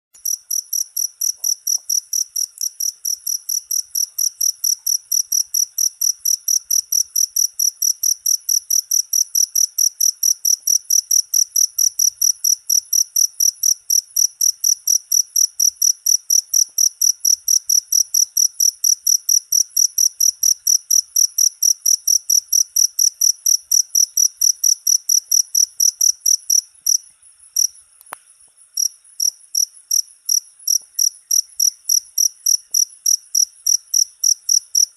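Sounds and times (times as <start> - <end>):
cricket chirping: 0.2 - 34.9
single click: 28.0 - 28.3.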